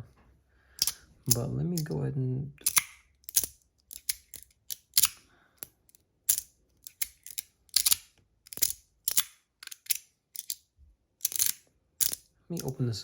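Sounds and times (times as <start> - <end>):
metal fidget slider clicking: 0.8 - 1.9, 2.6 - 5.2, 5.9 - 10.6, 11.2 - 12.7.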